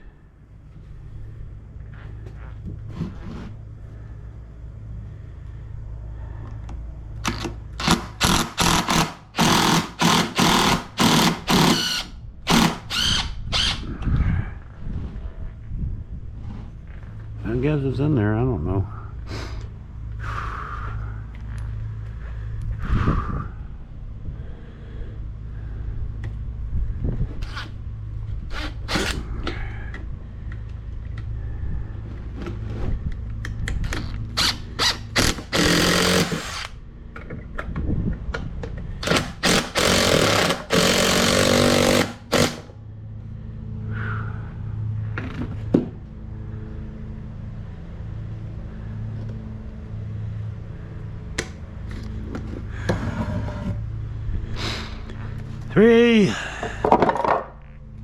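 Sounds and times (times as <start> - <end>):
power drill driving screws: 7.2 - 13.8, 34.4 - 36.8, 39.0 - 42.7
knocks and clatter of parts: 56.6 - 57.8.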